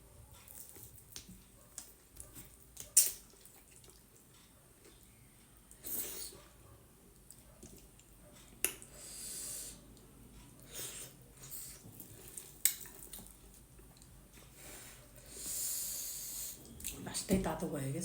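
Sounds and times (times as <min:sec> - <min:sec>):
person chewing: 0:02.8 - 0:05.0, 0:10.6 - 0:14.5
hissy sips: 0:05.8 - 0:06.4, 0:14.7 - 0:16.7.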